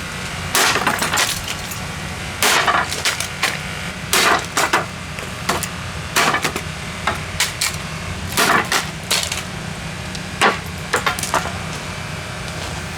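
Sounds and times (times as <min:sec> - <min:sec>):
plastic casing cracking and crunching: 0:07.2 - 0:11.5.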